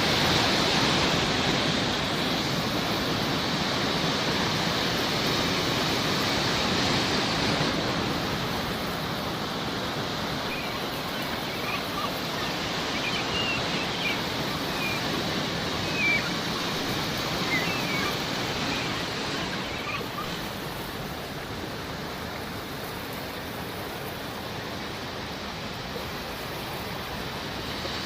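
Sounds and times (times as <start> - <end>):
sea waves washing in: 0.0 - 28.0
gulls calling: 0.1 - 21.5.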